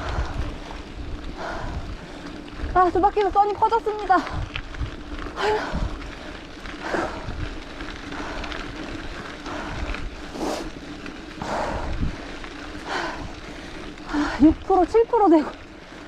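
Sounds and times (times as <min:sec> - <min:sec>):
person panting hard: 0:00.0 - 0:02.5, 0:05.4 - 0:14.6
tyres rumbling on dirt: 0:00.0 - 0:16.0
wind buffeting microphone: 0:00.0 - 0:16.0.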